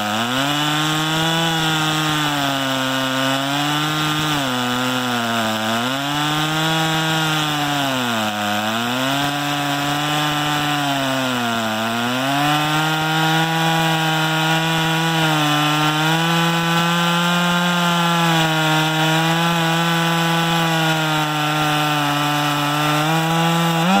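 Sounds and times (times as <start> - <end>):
chainsaw cutting log: 0.0 - 24.0.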